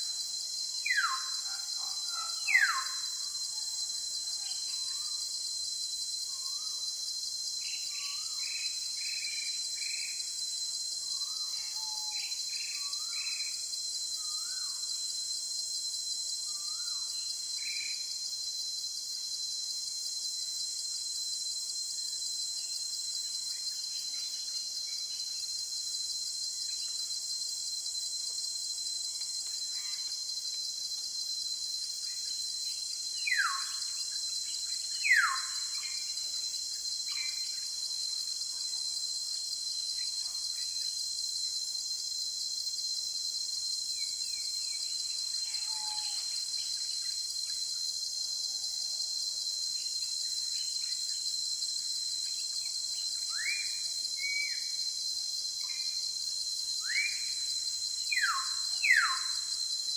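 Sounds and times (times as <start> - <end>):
insect chorus: 0.0 - 59.9.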